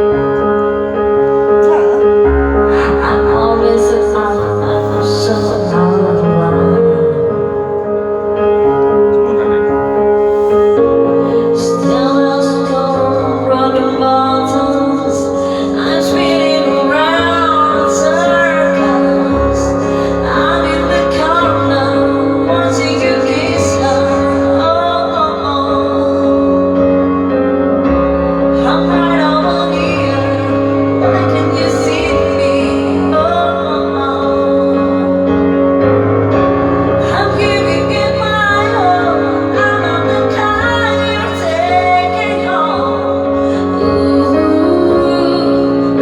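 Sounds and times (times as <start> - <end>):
instrumental accompaniment: 0.0 - 46.0
woman singing with vibrato: 2.6 - 7.9, 11.2 - 26.7, 28.6 - 35.3, 37.0 - 46.0.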